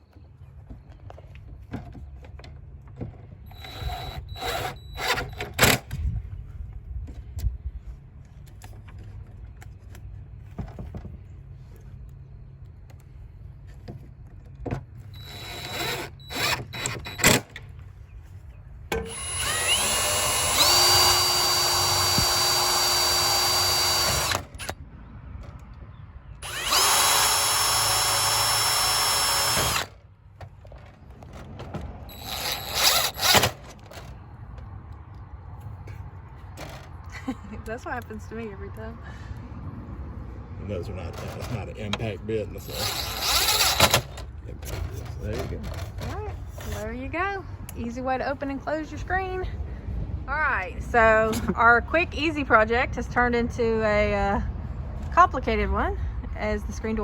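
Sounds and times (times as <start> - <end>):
power drill drilling: 3.5 - 5.8, 15.2 - 17.5, 19.0 - 24.7, 26.4 - 29.9, 32.1 - 33.7, 42.6 - 44.2.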